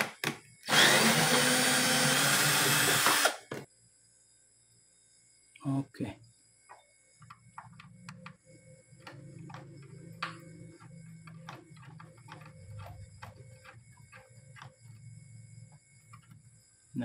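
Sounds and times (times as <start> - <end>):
hand tools clicking and tapping: 9.0 - 15.0.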